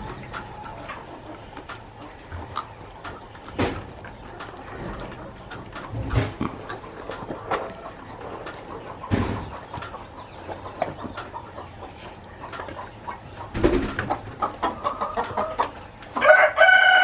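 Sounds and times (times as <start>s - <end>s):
chickens clucking: 0.0s - 17.0s
thumps: 9.0s - 9.9s
rooster crowing: 14.7s - 17.0s.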